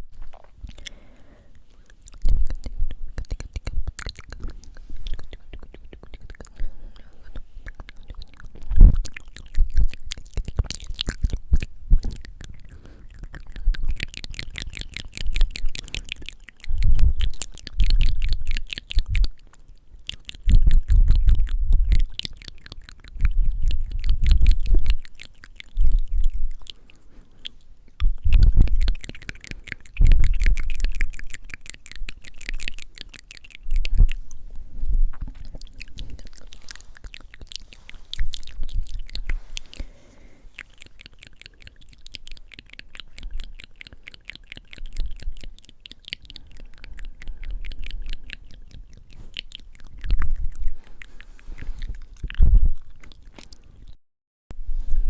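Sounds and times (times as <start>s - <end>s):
lip and tongue clicks: 0.0s - 54.0s
breath blown onto microphone: 35.9s - 40.8s, 50.5s - 52.7s.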